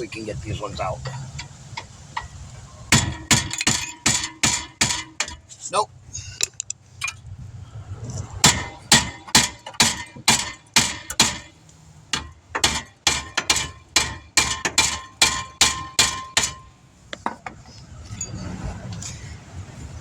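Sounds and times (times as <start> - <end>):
hammer striking steel: 2.9 - 5.5, 8.4 - 11.5, 12.1 - 16.7.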